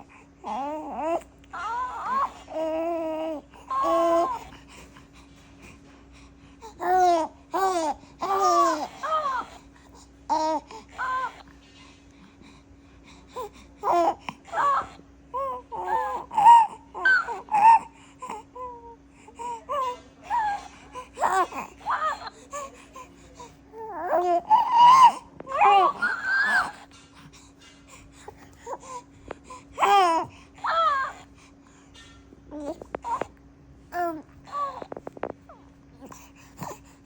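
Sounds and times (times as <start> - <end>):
faint hum: 0.0 - 37.0
baby crying: 0.5 - 4.5, 10.3 - 11.4, 13.8 - 17.9, 18.6 - 22.8, 23.7 - 26.9, 29.8 - 31.3, 34.0 - 35.0
baby babbling: 6.8 - 9.6, 13.8 - 27.0, 29.8 - 31.3, 33.9 - 36.8.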